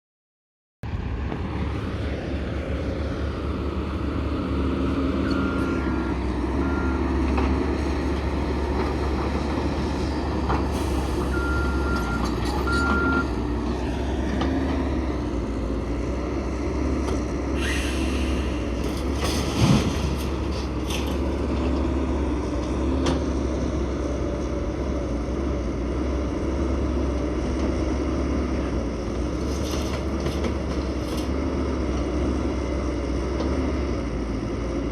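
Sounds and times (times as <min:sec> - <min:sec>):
diesel truck engine rumbling: 0:00.8 - 0:34.9
air hiss bursts: 0:17.6 - 0:18.6.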